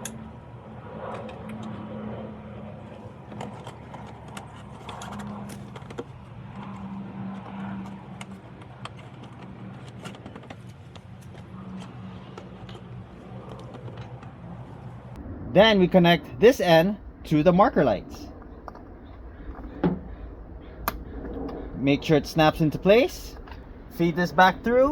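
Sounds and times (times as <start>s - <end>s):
steady low hum: 0.0s - 24.9s
wiring and plastic clicks and rustles: 3.2s - 14.7s.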